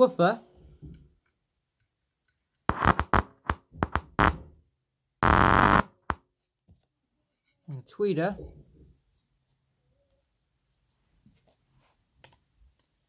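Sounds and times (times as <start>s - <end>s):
speaker crackling: 2.7s - 4.5s, 5.2s - 6.2s
speaker popping: 2.7s - 4.5s, 5.2s - 6.2s.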